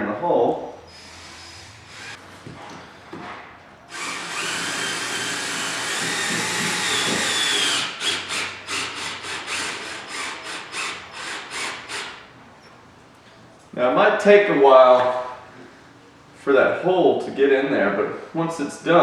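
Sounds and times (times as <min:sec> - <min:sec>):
power drill driving screw: 0:00.9 - 0:02.2, 0:03.9 - 0:12.2.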